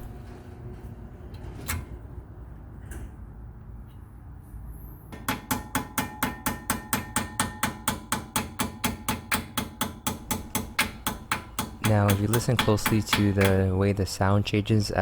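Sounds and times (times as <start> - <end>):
rapid metal hammer taps ringing: 5.2 - 13.8.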